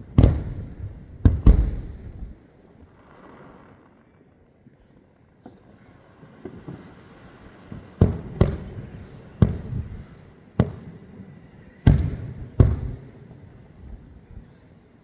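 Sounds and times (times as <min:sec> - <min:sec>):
fireworks bangs: 0:00.0 - 0:04.0, 0:06.2 - 0:13.5
faint firework pops: 0:06.3 - 0:07.1.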